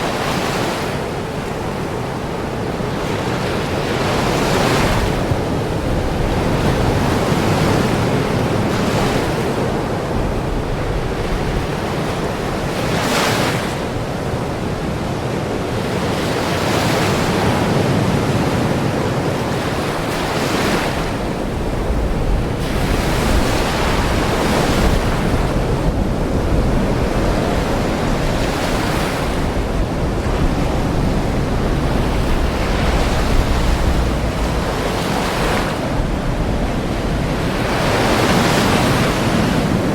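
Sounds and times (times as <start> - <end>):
ocean waves breaking: 0.0 - 39.9
low rumble: 29.4 - 38.2.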